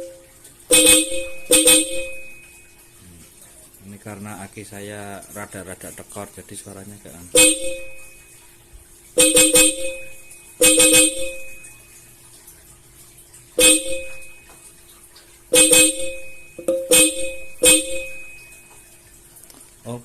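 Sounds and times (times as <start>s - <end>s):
car horn blasts: 0.0s - 2.6s, 7.4s - 8.2s, 9.2s - 11.7s, 13.6s - 14.4s, 15.5s - 18.5s.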